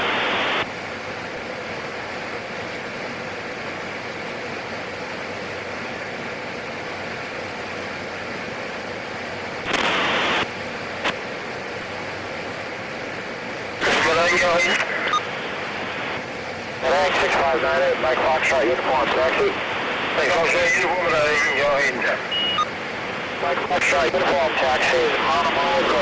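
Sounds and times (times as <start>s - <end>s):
radio static burst: 0.0s - 0.7s, 9.6s - 11.2s, 13.8s - 26.0s
turboprop cabin hiss: 0.0s - 26.0s.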